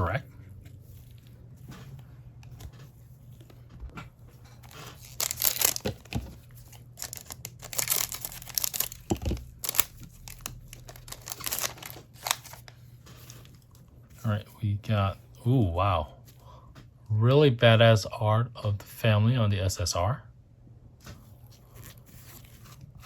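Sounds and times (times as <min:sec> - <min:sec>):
wrapper tearing and crinkling: 0:04.6 - 0:12.7.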